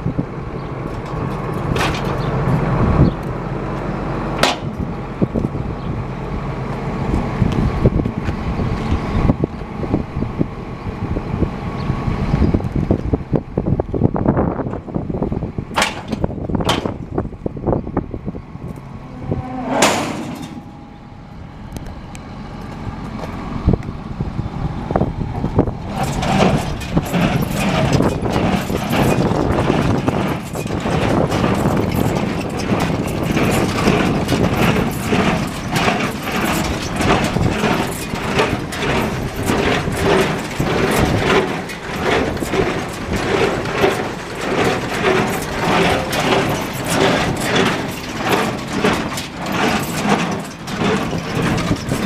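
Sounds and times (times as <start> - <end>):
baler machinery clattering: 0.1 - 5.7, 15.7 - 17.4, 18.0 - 24.0, 24.8 - 52.0.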